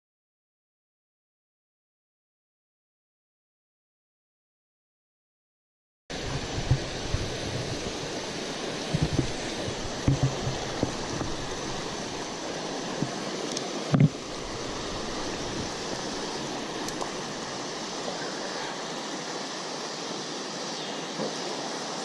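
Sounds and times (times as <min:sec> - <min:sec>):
creek water rushing: 0:06.1 - 0:22.0.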